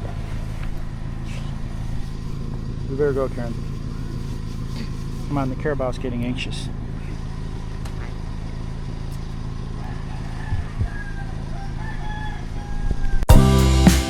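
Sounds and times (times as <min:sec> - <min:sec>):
low steady rumble: 0:00.0 - 0:13.8
rooster crowing faintly: 0:09.7 - 0:13.2
music with guitar and drums: 0:13.3 - 0:14.0.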